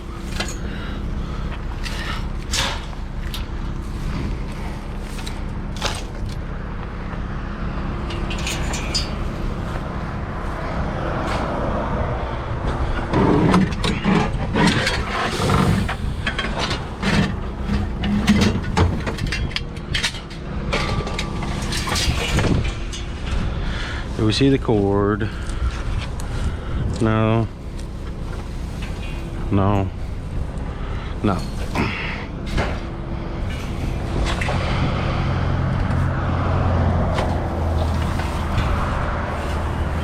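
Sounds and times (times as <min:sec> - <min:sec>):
vehicle engine idling: 0:00.0 - 0:13.2, 0:22.6 - 0:40.0
items clicking and clattering: 0:00.2 - 0:06.5, 0:08.0 - 0:09.9, 0:13.5 - 0:23.5
scraping: 0:08.0 - 0:11.6, 0:12.8 - 0:24.1, 0:25.3 - 0:40.0.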